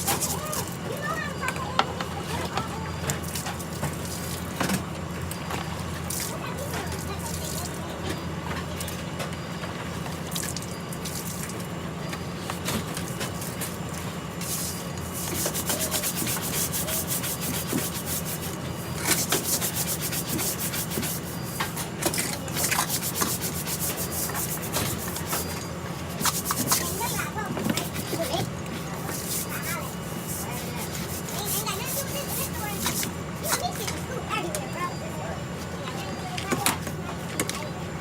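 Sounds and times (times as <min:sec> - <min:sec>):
steady low hum: 0:00.0 - 0:38.0
brush scrubbing hard surface: 0:12.5 - 0:33.9.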